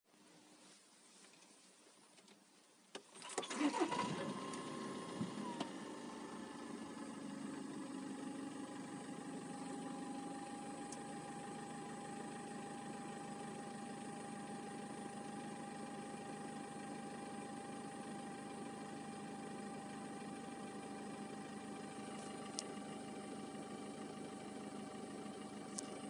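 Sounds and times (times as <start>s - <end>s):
car engine starting and idling: 3.0s - 26.0s
click: 22.5s - 22.7s.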